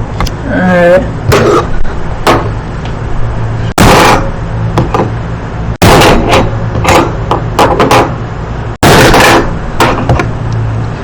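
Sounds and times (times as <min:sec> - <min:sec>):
hammer striking plastic: 0:05.8 - 0:08.2, 0:08.8 - 0:10.3.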